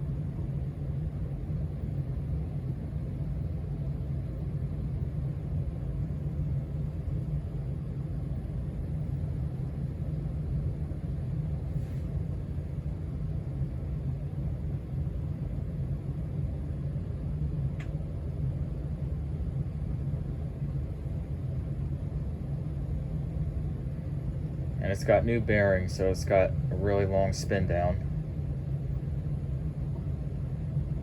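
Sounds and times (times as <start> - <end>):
ceiling fan spinning down: 0.0 - 31.0
faint click: 17.8 - 18.0.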